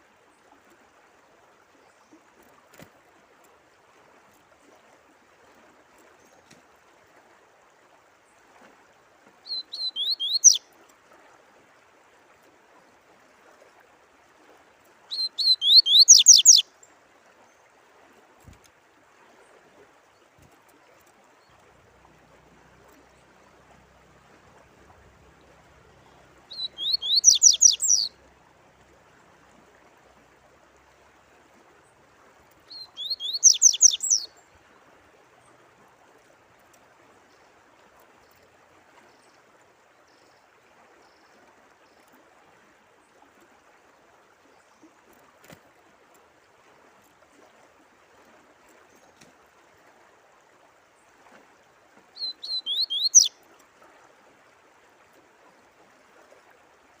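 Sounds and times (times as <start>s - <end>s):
faint running water: 0.0s - 57.0s
songbird singing: 9.4s - 10.7s, 15.1s - 16.9s, 24.6s - 28.4s, 32.6s - 34.8s, 52.2s - 53.4s.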